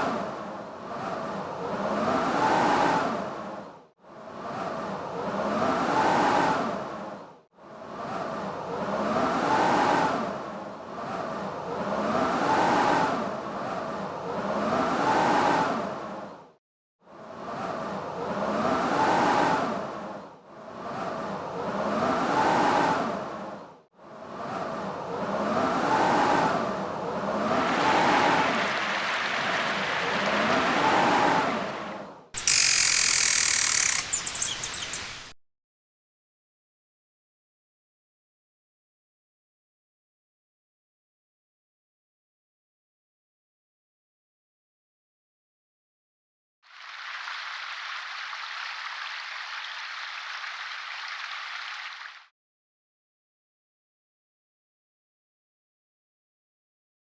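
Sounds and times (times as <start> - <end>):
blizzard wind howling: 17.2 - 32.3.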